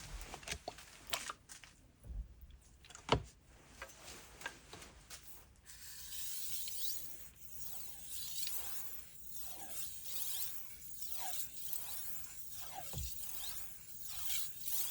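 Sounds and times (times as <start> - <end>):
blade scraping on whetstone: 5.7 - 14.9.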